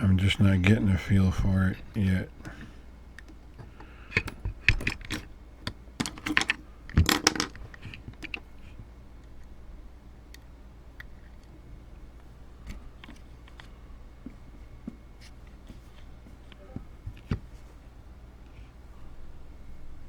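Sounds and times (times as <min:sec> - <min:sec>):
steady low hum: 0:00.0 - 0:20.0
lock pick clicking and scraping: 0:02.4 - 0:08.7.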